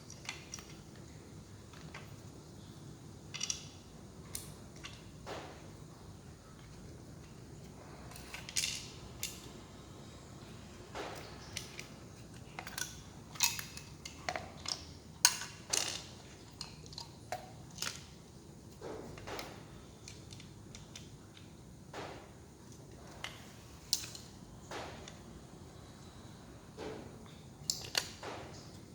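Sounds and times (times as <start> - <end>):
plastic and metal parts clicking: 3.3 - 3.7.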